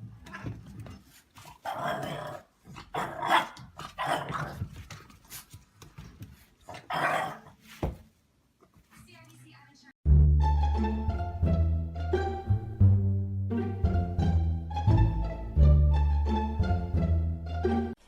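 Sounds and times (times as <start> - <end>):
dog growling and barking: 1.5 - 4.7, 6.7 - 7.6.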